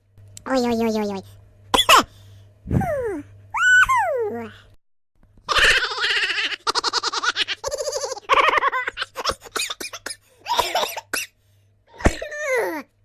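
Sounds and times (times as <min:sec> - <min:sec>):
high-pitched laugh-like voice: 0:05.5 - 0:09.6.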